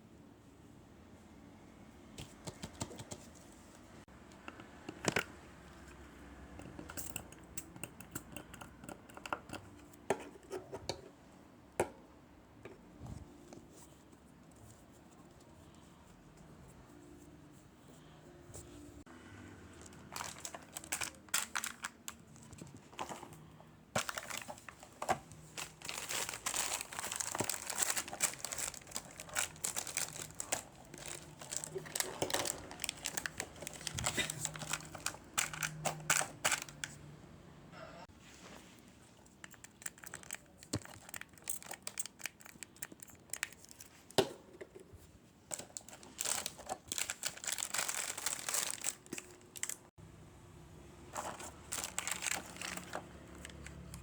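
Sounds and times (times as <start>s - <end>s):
plastic packaging crinkling and tearing: 19.8s - 23.3s, 24.0s - 36.9s, 39.4s - 44.2s, 45.5s - 49.9s, 51.2s - 54.0s.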